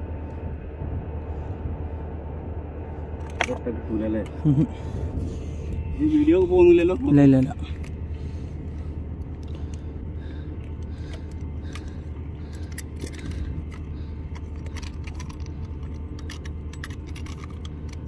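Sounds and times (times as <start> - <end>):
steady low hum: 0.0 - 18.0
metallic clicks and jingles: 10.6 - 18.0.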